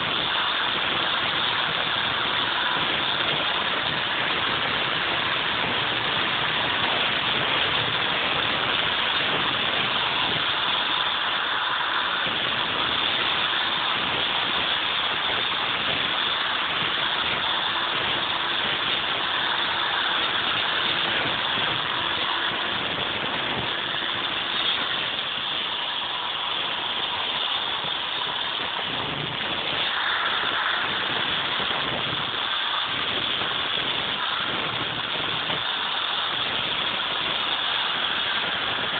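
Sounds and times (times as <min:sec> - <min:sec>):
angle grinder cutting mortar: 0:00.0 - 0:38.9.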